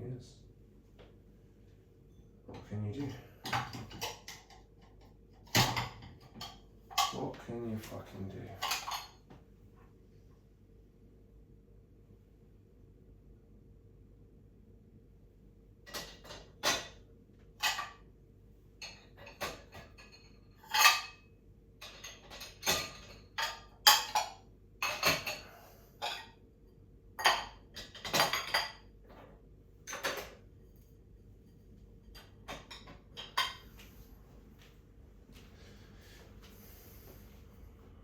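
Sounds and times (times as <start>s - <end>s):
dishes and cutlery clinking: 2.5s - 7.3s, 8.5s - 9.3s, 17.6s - 18.0s, 18.8s - 26.4s, 27.2s - 28.9s, 31.5s - 33.8s.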